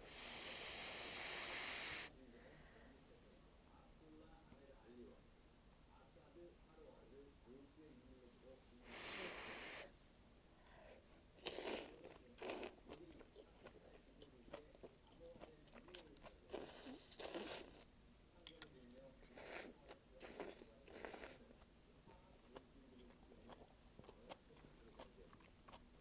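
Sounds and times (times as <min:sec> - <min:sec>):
person chewing crunchy food: 0:11.4 - 0:17.8, 0:19.2 - 0:21.7, 0:22.3 - 0:26.0.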